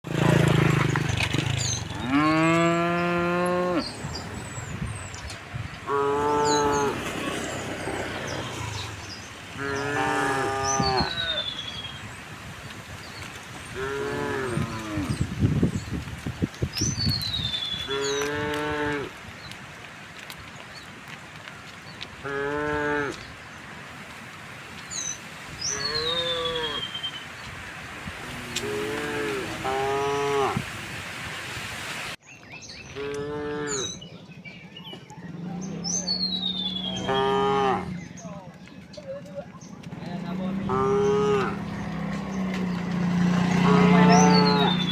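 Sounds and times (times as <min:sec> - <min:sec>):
small birds chirping: 0:00.2 - 0:19.6, 0:24.6 - 0:30.5, 0:32.2 - 0:44.9
cow mooing: 0:01.8 - 0:04.0, 0:05.8 - 0:07.0, 0:09.5 - 0:11.5, 0:13.8 - 0:15.2, 0:22.2 - 0:23.2, 0:25.7 - 0:26.9, 0:28.2 - 0:30.6, 0:33.0 - 0:34.0, 0:36.9 - 0:38.0, 0:40.4 - 0:41.7, 0:43.3 - 0:44.9.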